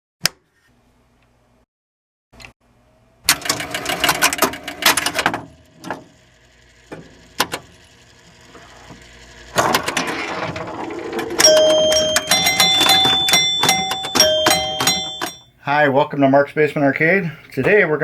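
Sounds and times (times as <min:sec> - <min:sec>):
ringing chime-like tone: 0:11.4 - 0:15.5.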